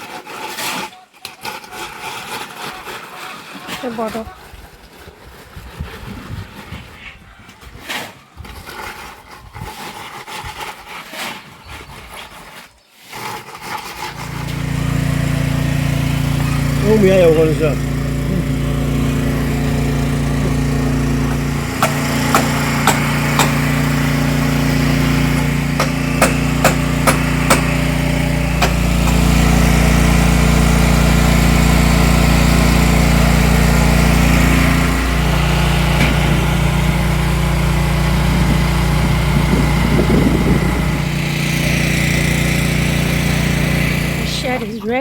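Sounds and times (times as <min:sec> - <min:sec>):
small engine running: 0:13.3 - 0:45.0
sharp knocks: 0:20.2 - 0:24.2, 0:24.9 - 0:27.9, 0:28.6 - 0:29.4.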